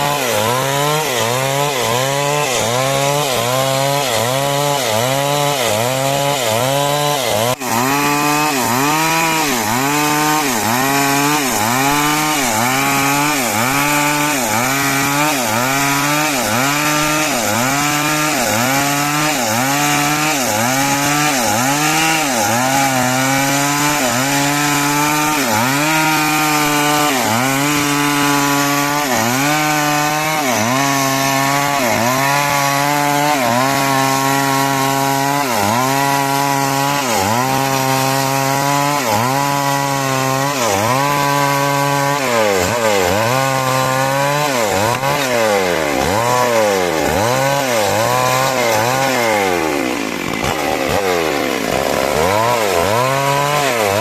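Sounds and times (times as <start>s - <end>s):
chainsaw sawing timber: 0.0s - 54.0s.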